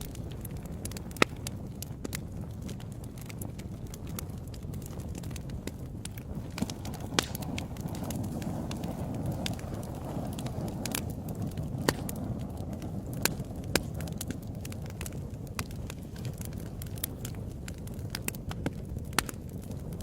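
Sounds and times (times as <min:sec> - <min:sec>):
fire crackling: 0:00.0 - 0:20.0
sharp pops and snaps: 0:00.0 - 0:20.0.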